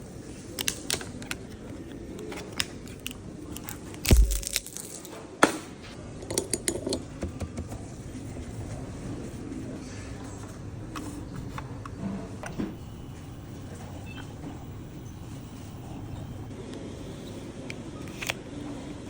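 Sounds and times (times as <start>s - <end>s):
clicks of small hard objects: 2.6s - 5.1s.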